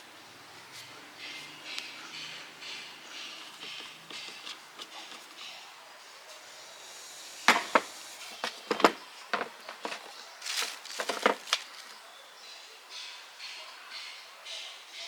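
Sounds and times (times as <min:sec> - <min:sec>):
sharp knocks and clicks: 0:07.5 - 0:10.1.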